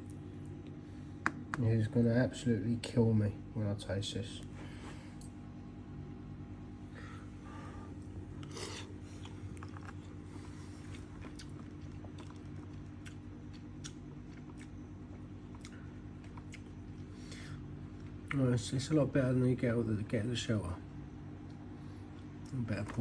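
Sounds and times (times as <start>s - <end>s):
steady low hum: 0.0s - 23.0s
person chewing: 8.0s - 18.2s.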